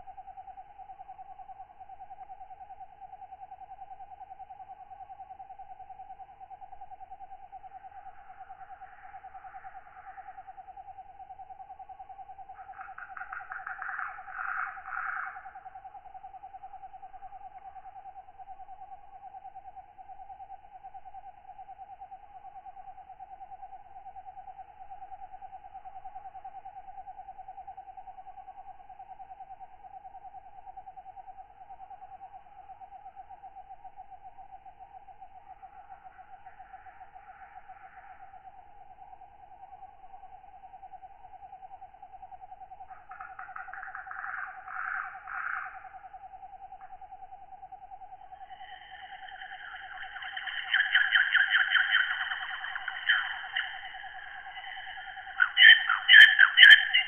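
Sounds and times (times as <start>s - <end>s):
katydids trilling: 48.6s - 57.0s.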